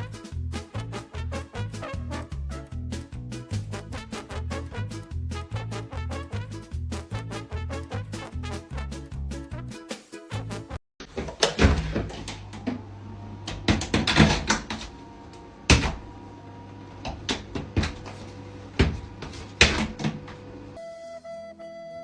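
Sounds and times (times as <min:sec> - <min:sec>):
sharp knocks and bangs: 0:13.5 - 0:14.9, 0:15.7 - 0:16.1, 0:18.8 - 0:20.4.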